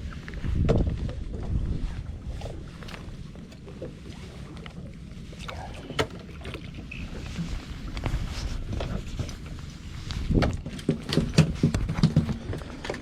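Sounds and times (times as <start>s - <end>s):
water lapping around boat: 0.0s - 13.0s
knocks on boat: 10.3s - 12.6s.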